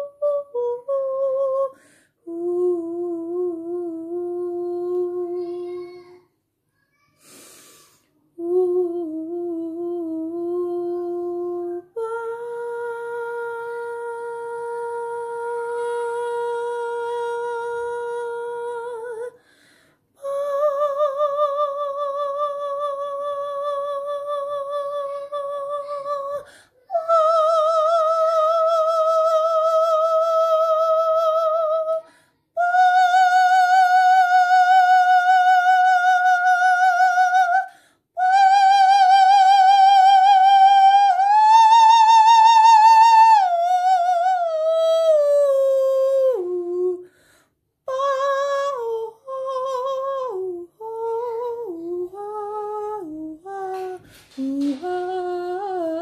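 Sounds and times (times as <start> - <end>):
person humming long notes: 0.0 - 5.8
short breaths: 1.8 - 2.2, 7.0 - 8.2, 19.4 - 20.1, 26.4 - 26.9, 47.0 - 47.7.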